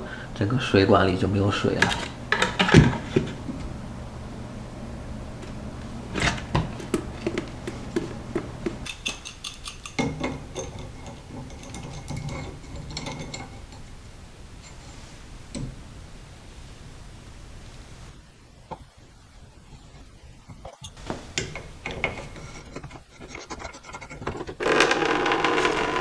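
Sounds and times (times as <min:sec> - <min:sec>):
metallic clicks and clinks: 0:08.8 - 0:13.4.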